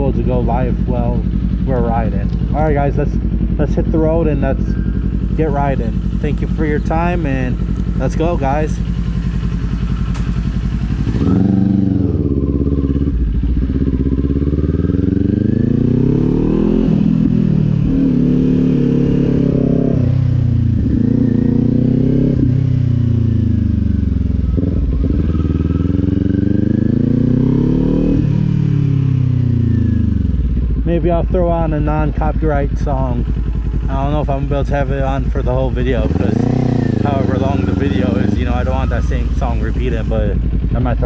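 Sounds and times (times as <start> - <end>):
motorcycle engine accelerating: 0.0 - 41.0.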